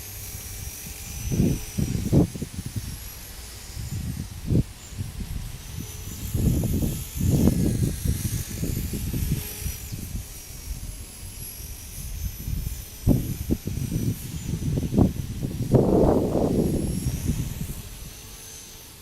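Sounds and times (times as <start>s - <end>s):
rc helicopter whine: 0.0s - 19.0s
wind buffeting microphone: 0.3s - 18.4s.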